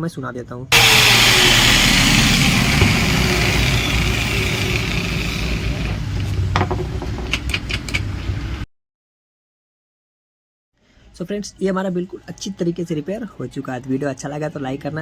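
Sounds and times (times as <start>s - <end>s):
electric grinder whirring: 0.7s - 6.4s.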